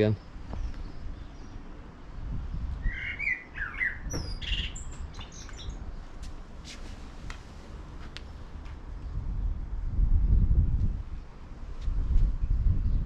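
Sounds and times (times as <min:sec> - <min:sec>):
bird chirping and squawking: 0:02.8 - 0:05.8.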